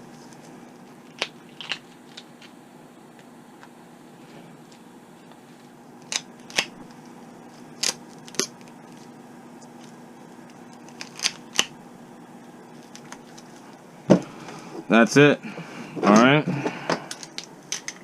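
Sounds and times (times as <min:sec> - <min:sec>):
steady low hum: 0:00.0 - 0:18.0
duct tape clicks and snips: 0:06.0 - 0:07.0.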